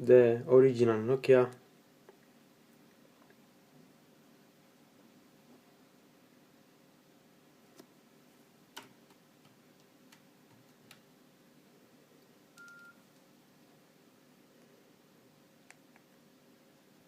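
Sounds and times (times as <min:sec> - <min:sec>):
short beep: 0:12.6 - 0:13.0.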